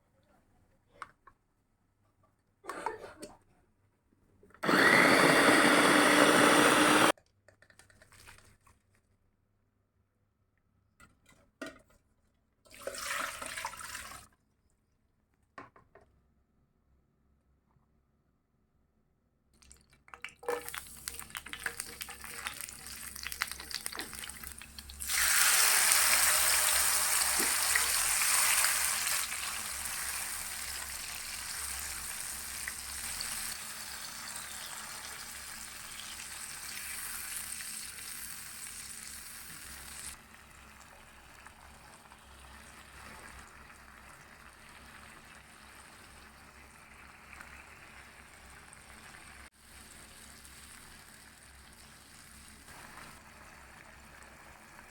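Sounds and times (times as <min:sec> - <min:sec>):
food sizzling in hot oil: 0:20.7 - 0:40.2.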